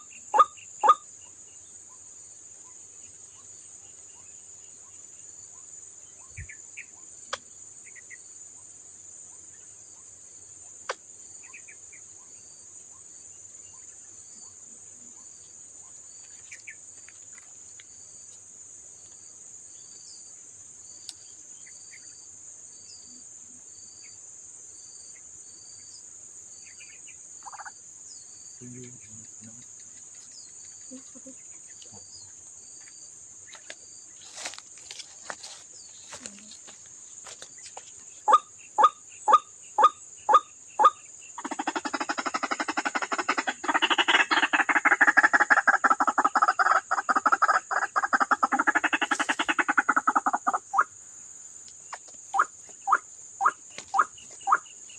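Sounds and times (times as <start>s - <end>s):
insects droning: 0.0s - 54.9s
bird calls: 37.4s - 51.0s, 51.9s - 54.9s.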